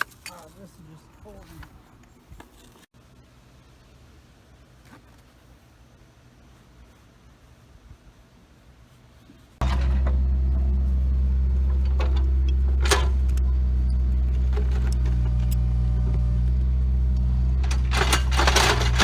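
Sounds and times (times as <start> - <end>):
engine idling: 9.6 - 19.0.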